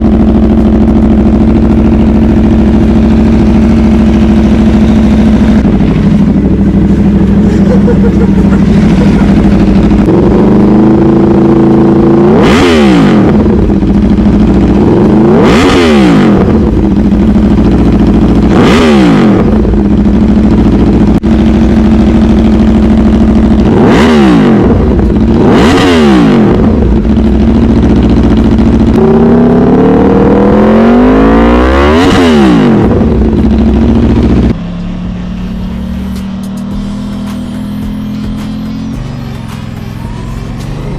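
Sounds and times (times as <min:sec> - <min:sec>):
motorcycle throttle blips: 0:00.0 - 0:31.3
motorcycle engine idling and revving: 0:00.0 - 0:40.9.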